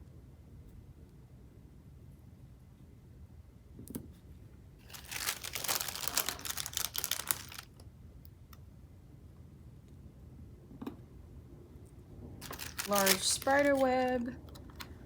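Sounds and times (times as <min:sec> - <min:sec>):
paper sheet crinkling: 0:04.8 - 0:07.7, 0:12.4 - 0:14.3.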